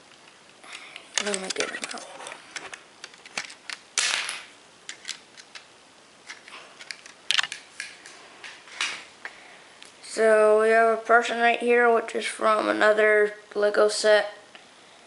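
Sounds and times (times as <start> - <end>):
plastic bricks clicking and knocking: 1.0 - 5.7, 6.3 - 8.0
scraping rustle: 1.3 - 2.7.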